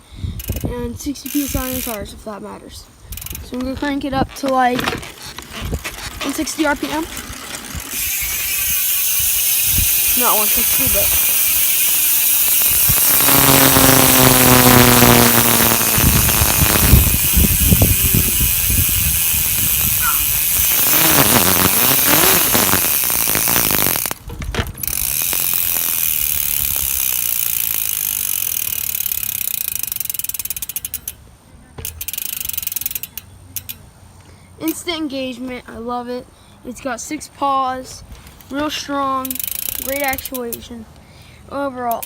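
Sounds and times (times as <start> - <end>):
bicycle freewheel hub buzzing: 0.2 - 2.1, 3.1 - 3.6, 4.4 - 33.9, 39.0 - 40.7.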